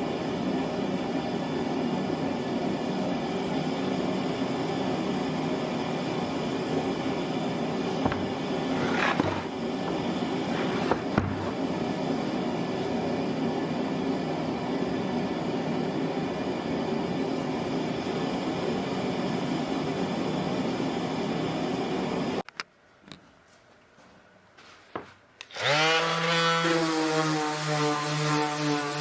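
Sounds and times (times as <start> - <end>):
power saw running: 8.0 - 11.9, 25.5 - 28.0.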